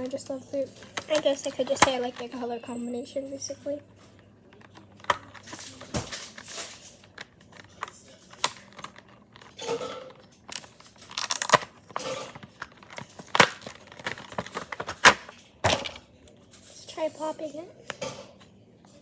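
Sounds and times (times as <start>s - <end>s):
plastic packaging crinkling and tearing: 0.5s - 2.4s, 4.1s - 15.5s.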